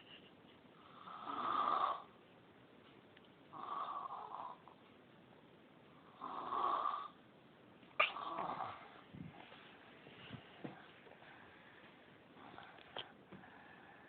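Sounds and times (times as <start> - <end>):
loud snoring: 1.0 - 2.1, 6.2 - 7.2.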